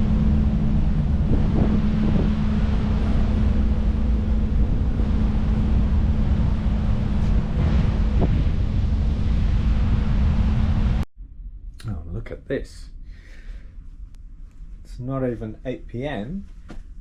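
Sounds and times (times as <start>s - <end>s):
wind buffeting microphone: 0.0s - 11.0s
ship rumble and hum: 0.0s - 17.0s.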